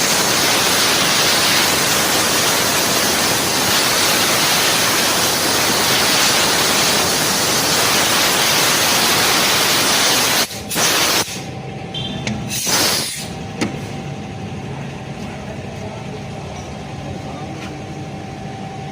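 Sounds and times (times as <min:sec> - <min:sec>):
pressurised spray hissing: 0:00.0 - 0:11.5, 0:12.5 - 0:13.3
low mechanical hum: 0:10.4 - 0:18.9.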